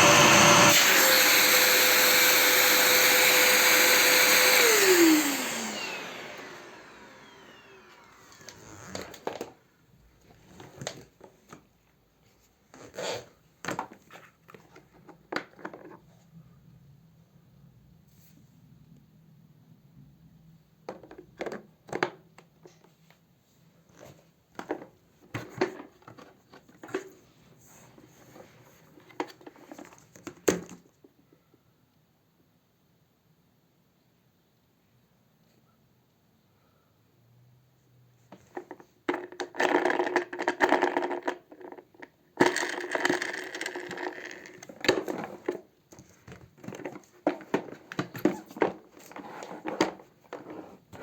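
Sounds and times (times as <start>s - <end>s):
objects rustling and clicking: 38.3s - 51.0s.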